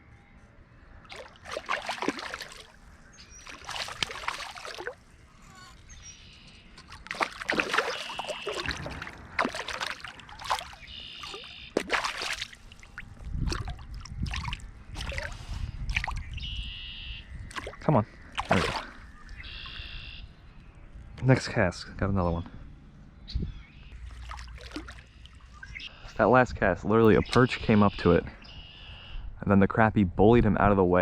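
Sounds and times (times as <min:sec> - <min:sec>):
water splashing: 0:01.0 - 0:05.9, 0:06.7 - 0:16.4, 0:17.5 - 0:19.8, 0:24.0 - 0:25.6.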